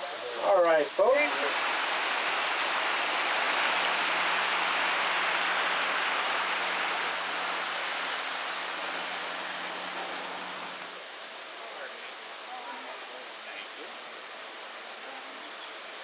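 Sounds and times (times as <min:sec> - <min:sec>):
water rushing over waterfall: 0:00.6 - 0:11.2.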